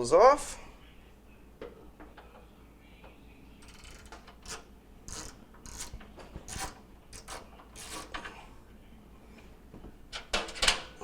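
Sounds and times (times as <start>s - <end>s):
ratcheting screwdriver clicking: 3.6s - 7.4s.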